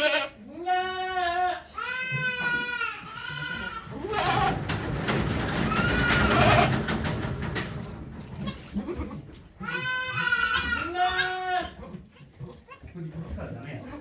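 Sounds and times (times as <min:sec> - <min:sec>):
goat bleating: 0:00.0 - 0:04.6, 0:05.7 - 0:06.8, 0:08.3 - 0:13.0.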